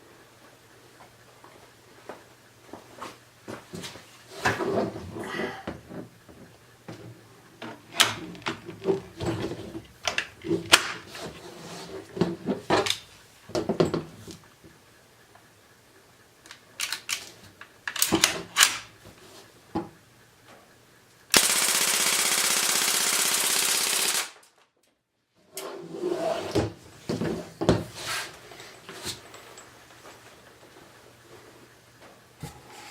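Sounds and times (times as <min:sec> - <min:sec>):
automatic gunfire burst: 0:21.3 - 0:24.4.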